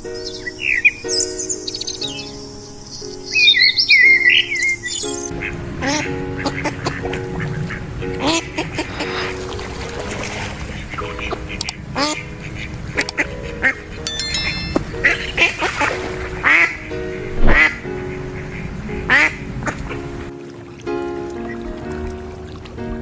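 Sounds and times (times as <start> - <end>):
background music: 0.0 - 23.0
ducks quacking: 5.3 - 20.3.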